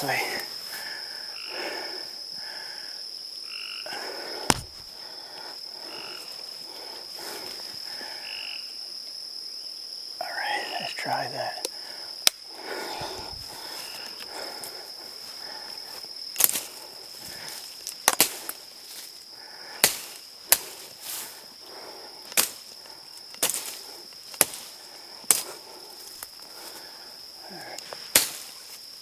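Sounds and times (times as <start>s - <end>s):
high insect drone: 0.0s - 29.0s
machete chopping brush: 4.4s - 4.9s, 18.0s - 18.6s, 19.8s - 20.9s, 22.3s - 22.7s, 23.4s - 25.5s, 28.1s - 28.8s.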